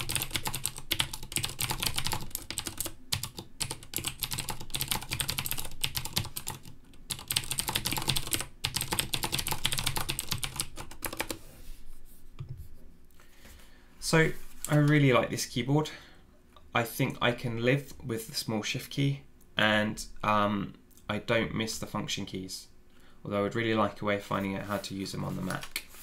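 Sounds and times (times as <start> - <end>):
mechanical keyboard typing: 0.0 - 11.4.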